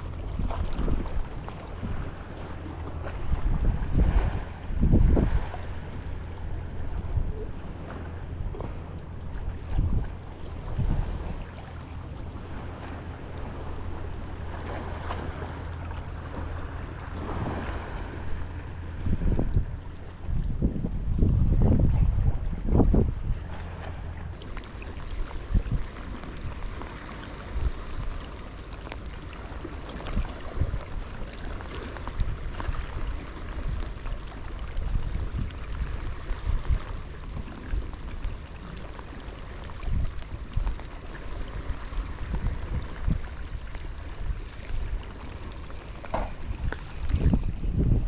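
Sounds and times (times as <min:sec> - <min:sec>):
sea water washing: 0:00.0 - 0:21.5, 0:22.1 - 0:48.0
wind gusting against microphone: 0:03.0 - 0:08.5, 0:16.5 - 0:28.3, 0:46.0 - 0:48.0.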